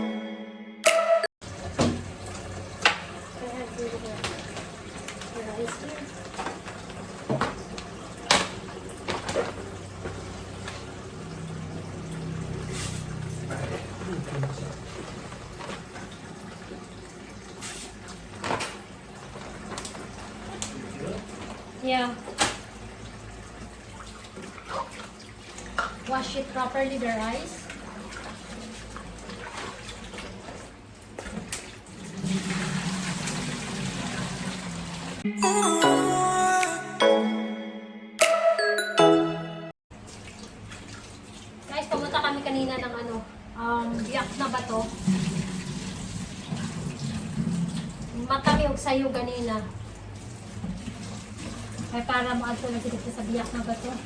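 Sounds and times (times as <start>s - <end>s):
rice being washed in a pot: 1.4s - 35.2s, 43.8s - 54.0s
tap water running into container: 1.4s - 35.2s, 39.9s - 42.2s, 43.9s - 54.0s
chiming music jingle: 35.2s - 39.8s.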